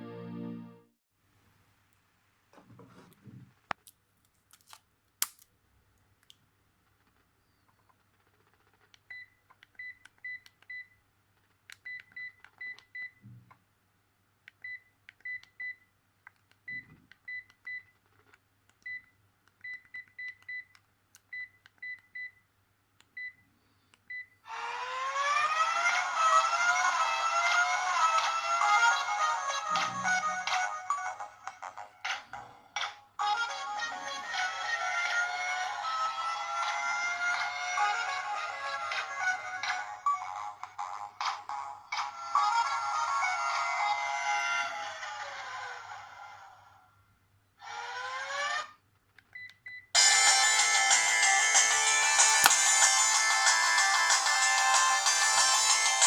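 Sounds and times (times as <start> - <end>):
electronic phone ringtone: 50.0 - 56.0.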